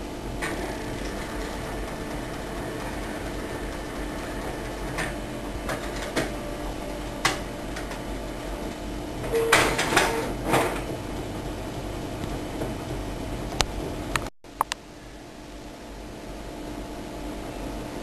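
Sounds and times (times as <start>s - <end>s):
room hum: 0.0s - 18.0s
clattering: 0.4s - 14.3s.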